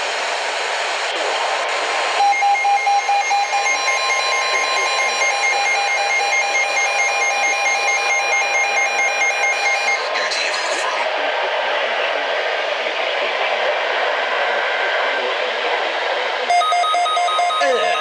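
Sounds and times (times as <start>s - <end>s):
electronic alarm beeps: 2.2s - 10.1s, 16.5s - 18.0s
radio warning alert tone: 2.2s - 10.1s, 16.5s - 18.0s.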